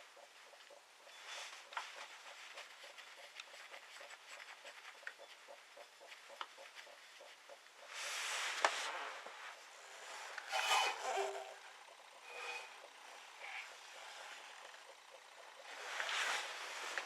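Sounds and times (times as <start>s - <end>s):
faint rapid ticking: 0.0s - 8.0s
hissing scrape: 7.9s - 14.6s.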